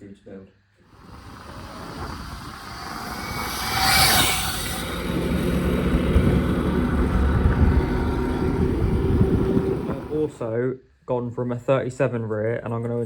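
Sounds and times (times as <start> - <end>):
hissing rush: 0.9 - 10.4
vehicle engine rumble: 0.9 - 10.4.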